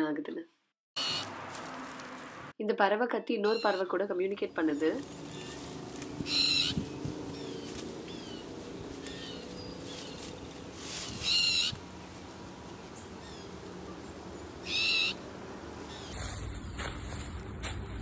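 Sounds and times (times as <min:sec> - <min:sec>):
bird harsh calls: 0:01.0 - 0:01.3, 0:03.4 - 0:03.9, 0:04.8 - 0:11.9, 0:12.9 - 0:16.4.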